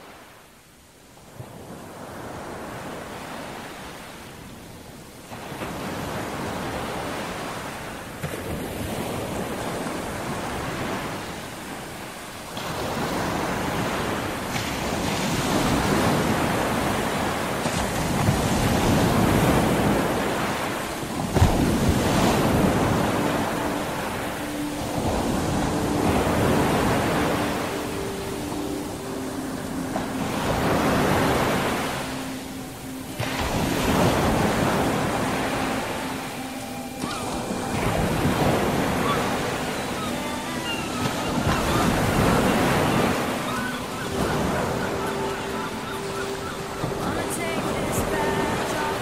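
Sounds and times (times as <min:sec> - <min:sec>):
sea waves breaking ashore: 0:00.0 - 0:49.0
wind buffeting microphone: 0:12.5 - 0:49.0.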